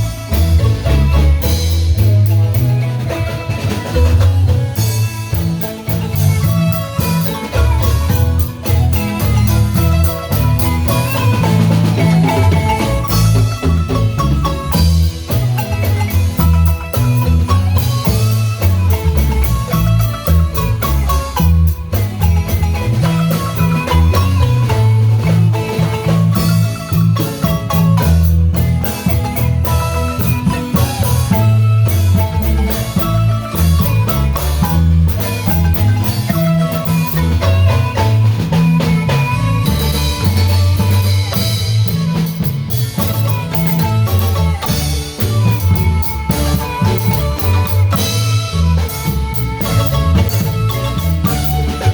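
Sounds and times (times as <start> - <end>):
marimba band playing: 0.0 - 51.9.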